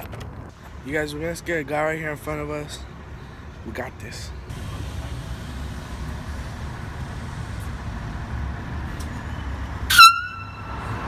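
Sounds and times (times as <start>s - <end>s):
street traffic hum: 0.0s - 11.0s
air horn blast: 9.9s - 11.0s.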